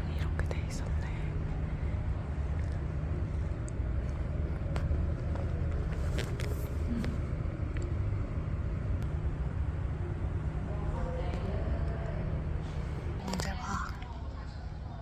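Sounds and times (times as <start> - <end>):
low vehicle rumble: 0.0 - 15.0
faint clicks and taps: 3.6 - 8.0.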